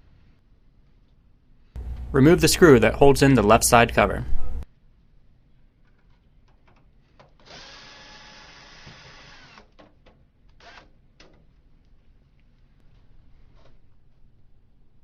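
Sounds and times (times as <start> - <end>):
power screwdriver running: 7.4 - 9.8.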